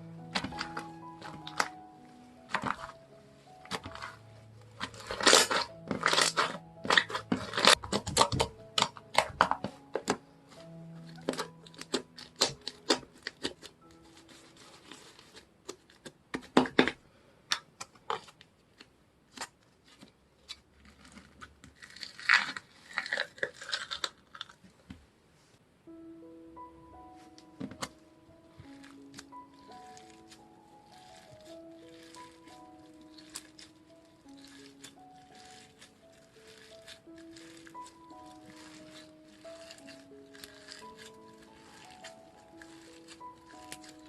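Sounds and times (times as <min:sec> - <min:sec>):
soft background music: 0:00.0 - 0:16.0, 0:25.8 - 0:44.0
slime clicking and popping: 0:04.8 - 0:10.2.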